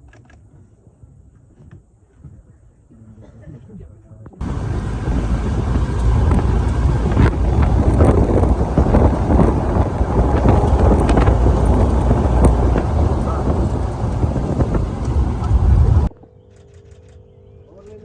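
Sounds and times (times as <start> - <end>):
wind buffeting microphone: 4.2 - 16.2
vehicle rumble: 4.2 - 18.0.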